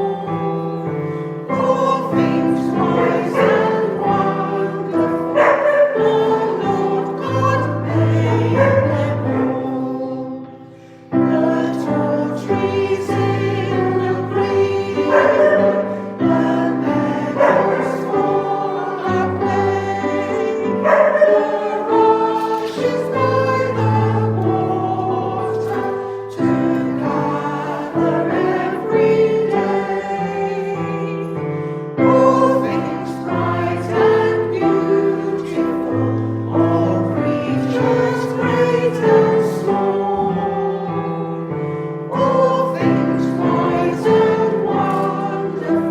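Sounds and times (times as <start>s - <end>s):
many voices singing a hymn: 0.0s - 45.9s.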